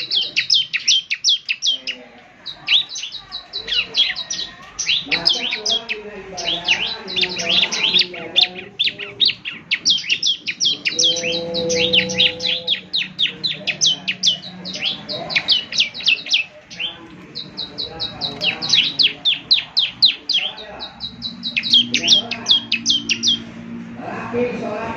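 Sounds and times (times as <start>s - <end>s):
bird singing high chirps: 0.0s - 23.6s.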